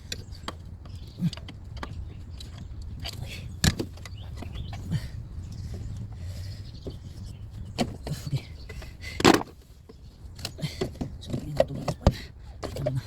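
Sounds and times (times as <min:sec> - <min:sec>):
low steady hum: 0:00.0 - 0:13.0
clicks and knocks: 0:09.2 - 0:09.6.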